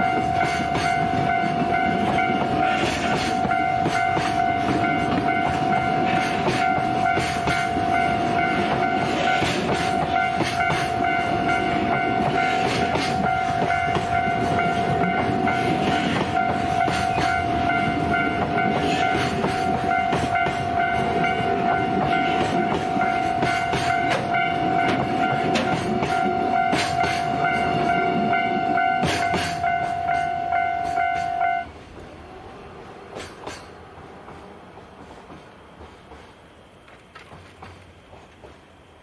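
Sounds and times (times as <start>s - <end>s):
level-crossing warning bell: 0.0s - 31.8s
train wheels clattering on rails: 0.0s - 39.0s.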